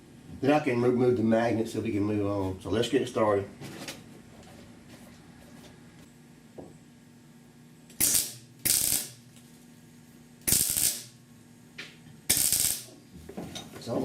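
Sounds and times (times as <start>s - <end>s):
welding arc bursts: 7.9s - 9.2s, 10.4s - 11.2s, 12.3s - 12.9s.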